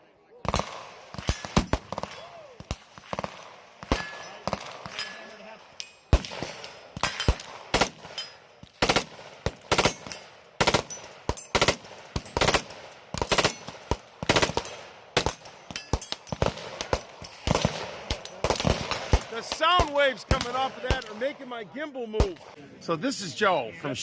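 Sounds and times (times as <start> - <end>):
automatic gunfire bursts: 8.8 - 15.4.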